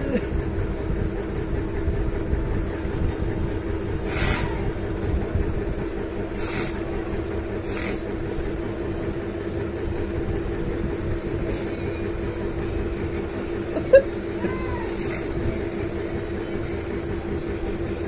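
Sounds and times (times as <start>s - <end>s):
steady low hum: 0.0s - 18.0s
person sniffing: 4.0s - 4.5s, 6.4s - 6.8s, 7.6s - 8.1s.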